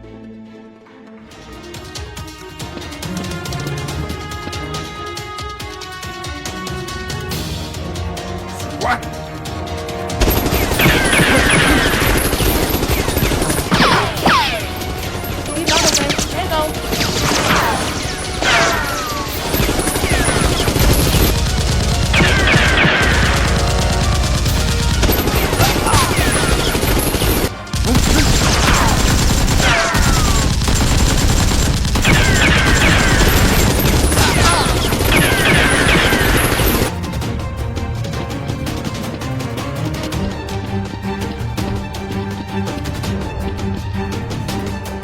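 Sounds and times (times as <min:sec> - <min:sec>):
music: 0:00.0 - 0:45.0
automatic gunfire: 0:10.2 - 0:36.9.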